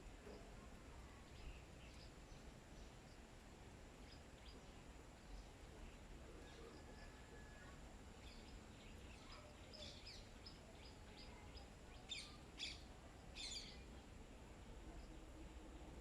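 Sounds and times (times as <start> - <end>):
small birds chirping: 0.1 - 7.2, 8.1 - 14.2.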